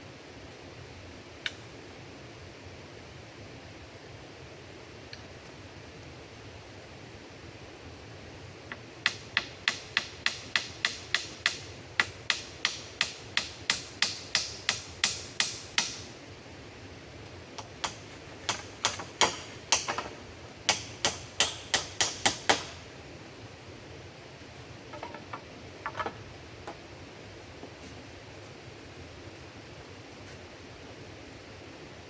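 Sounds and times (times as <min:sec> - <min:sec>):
rapid sharp knocks: 0:09.0 - 0:16.1, 0:17.6 - 0:22.8, 0:24.9 - 0:26.8.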